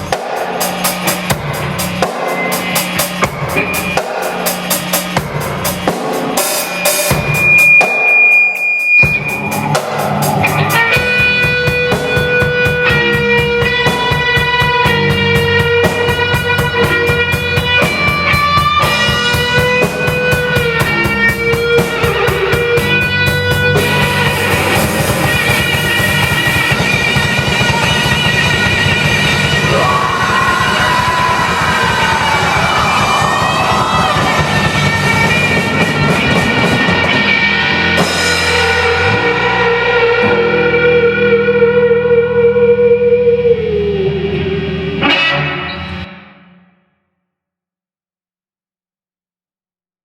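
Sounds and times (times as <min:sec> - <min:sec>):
fast drumming: 0:00.0 - 0:39.3
heavy rock band playing: 0:00.0 - 0:42.6
lead guitar bending notes: 0:09.1 - 0:46.2.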